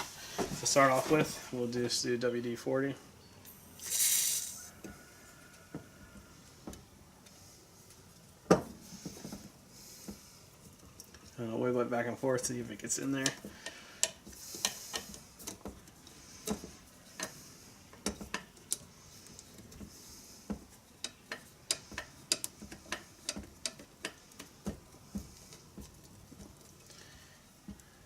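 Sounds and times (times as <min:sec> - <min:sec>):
light metal clicks and taps: 0:13.1 - 0:19.9, 0:20.5 - 0:26.9.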